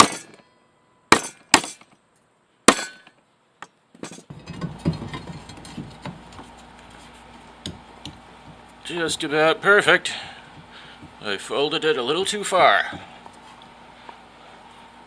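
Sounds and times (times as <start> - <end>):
hammer striking metal: 0.0 - 0.4, 1.1 - 1.8, 2.7 - 3.1.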